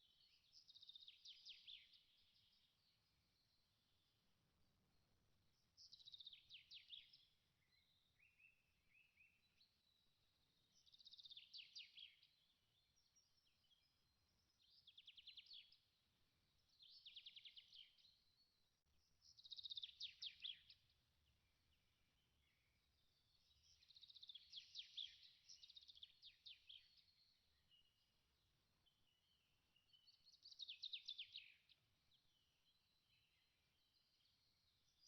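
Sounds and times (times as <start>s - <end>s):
faint songbird singing: 0.0s - 35.0s
soft bird chirps: 0.0s - 35.0s.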